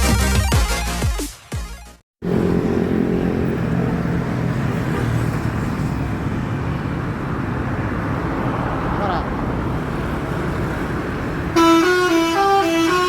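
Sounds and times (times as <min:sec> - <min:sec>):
road noise: 0:02.2 - 0:13.0
vehicle engine hum: 0:02.2 - 0:13.0.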